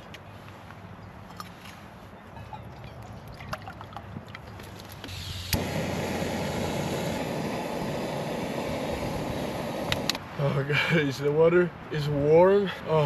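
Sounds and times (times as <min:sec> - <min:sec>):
gas burner hissing: 0:05.1 - 0:10.2.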